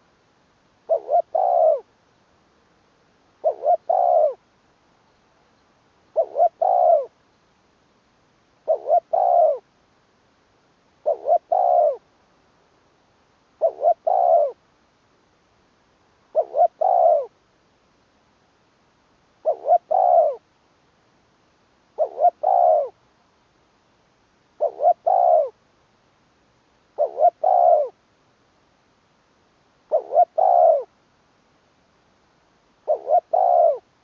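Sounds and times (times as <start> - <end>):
dove cooing: 0.9 - 1.9, 3.4 - 4.4, 6.1 - 7.2, 8.6 - 9.7, 11.0 - 12.0, 13.6 - 14.6, 16.3 - 17.3, 19.4 - 20.4, 22.0 - 23.0, 24.6 - 25.6, 27.0 - 28.0, 29.9 - 30.9, 32.8 - 33.9.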